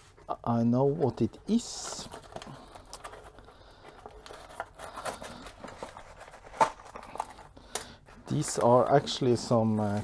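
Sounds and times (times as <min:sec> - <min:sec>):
packaging crinkling and rustling: 0:00.9 - 0:10.0.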